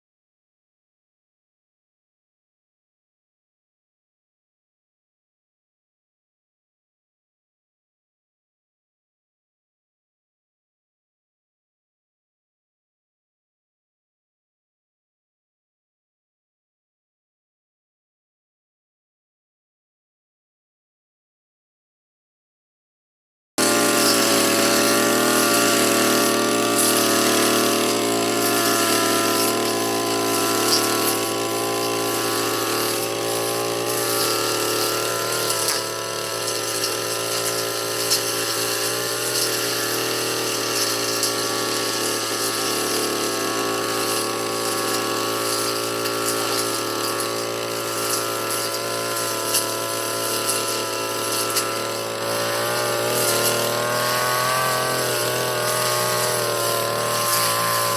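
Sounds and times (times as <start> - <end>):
brush cutter engine running: 23.6 - 57.9.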